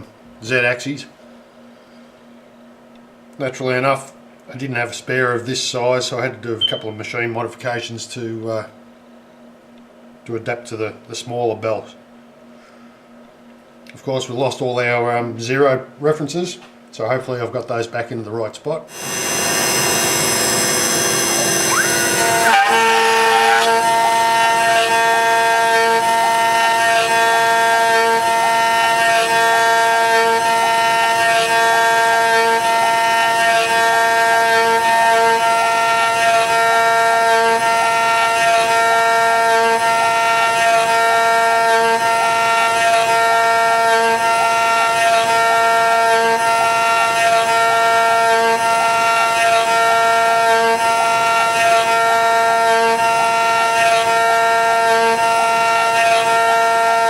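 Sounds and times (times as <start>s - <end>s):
lower machine tone: 3.5s - 15.9s, 18.1s - 57.0s
cnc router high whine: 18.9s - 57.0s.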